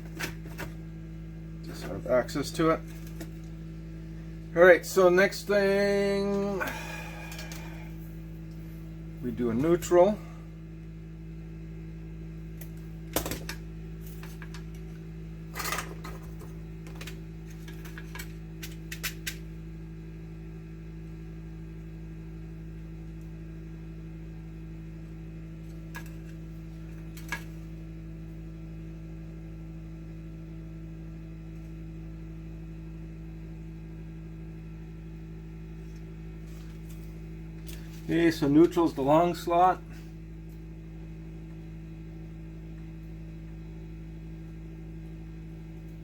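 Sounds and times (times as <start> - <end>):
low electrical hum: 0.0 - 46.0
tool and wire clicks: 16.8 - 19.4.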